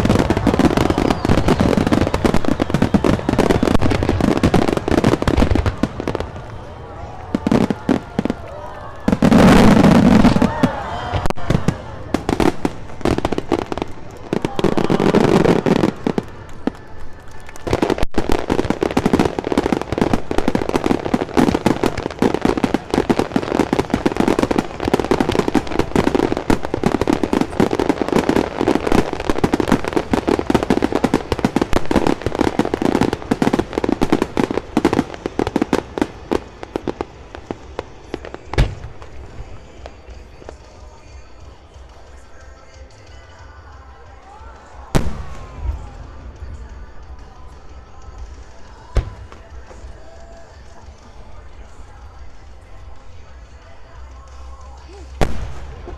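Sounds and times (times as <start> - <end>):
fireworks bangs and crackles: 0.0 - 55.9
loud firework bang: 38.6 - 39.1.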